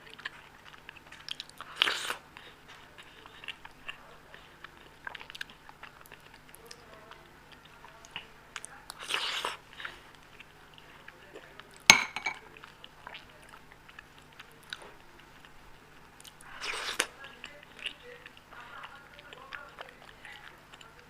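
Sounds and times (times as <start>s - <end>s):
person chewing: 0.0s - 6.8s, 7.5s - 10.9s, 16.2s - 21.0s.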